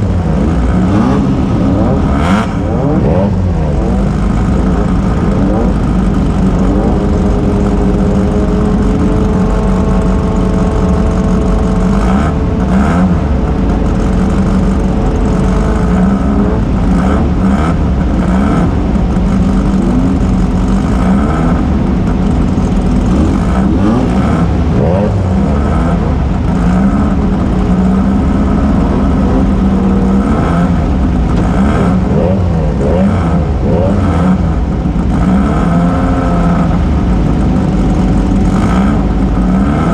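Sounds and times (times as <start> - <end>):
race car engine revving: 0.0 - 39.9.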